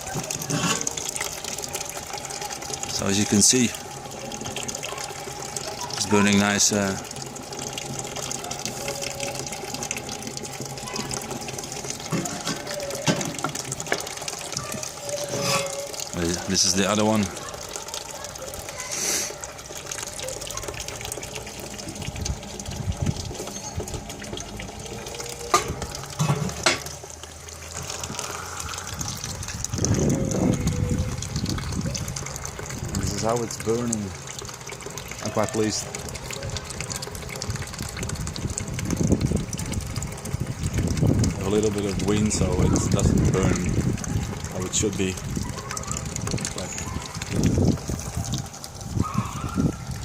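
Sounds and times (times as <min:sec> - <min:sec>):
rocket stove fire rushing draft: 0:00.0 - 0:14.6
stove draft rushing: 0:00.0 - 0:50.0.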